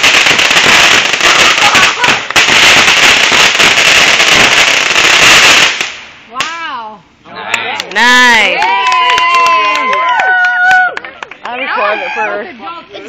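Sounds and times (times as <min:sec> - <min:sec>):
fireworks crackling: 0:00.0 - 0:06.9.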